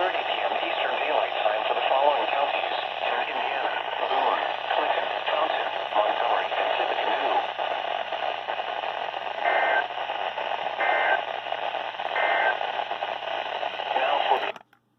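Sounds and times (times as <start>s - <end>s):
radio hiss: 0.0s - 14.6s
warbling data bursts: 10.8s - 11.3s, 12.1s - 12.6s.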